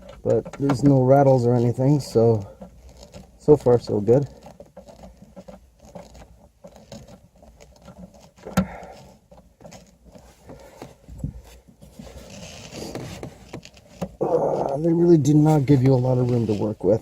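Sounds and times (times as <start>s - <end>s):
hand tools clicking and scraping: 0.0s - 17.0s.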